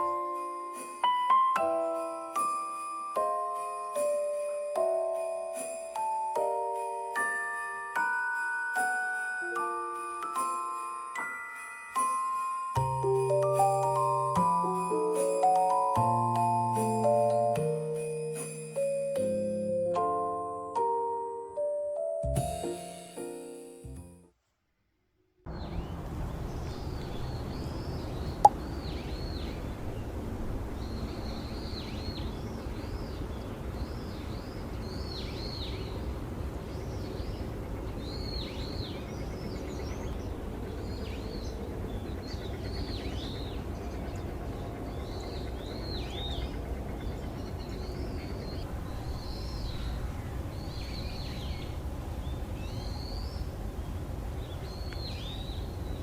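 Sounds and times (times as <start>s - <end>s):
small birds calling: 25.5s - 53.6s.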